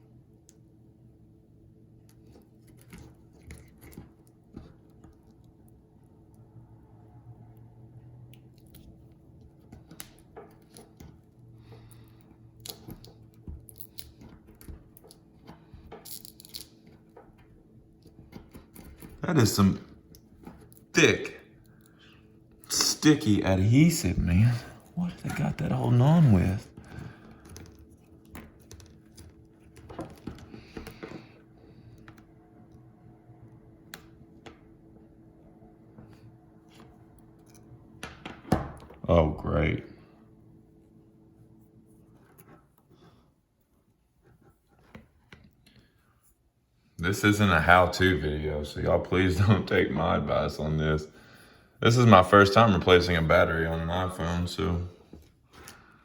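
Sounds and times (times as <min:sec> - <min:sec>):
steady low hum: 0:00.0 - 0:56.0
small tools clicking and scraping: 0:12.6 - 0:17.1.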